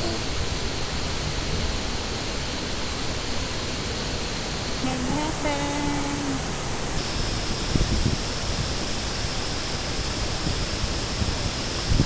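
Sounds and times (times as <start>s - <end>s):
waterfall roaring: 4.8s - 7.0s.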